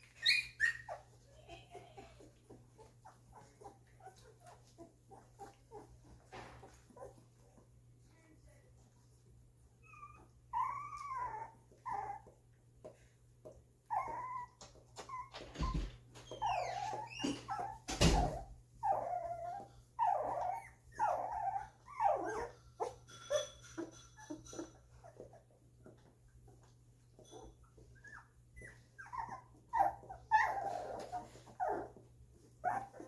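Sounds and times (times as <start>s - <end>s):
puppies whimpering and squealing: 0.0s - 7.7s, 9.8s - 33.0s.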